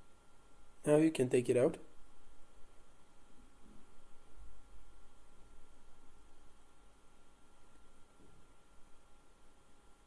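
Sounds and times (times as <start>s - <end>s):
thin electrical hum: 0.0s - 10.0s.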